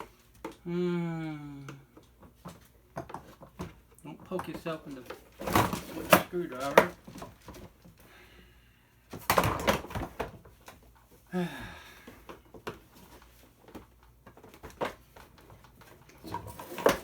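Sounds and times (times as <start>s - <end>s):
person grunting: 0.6s - 1.8s, 11.3s - 11.9s.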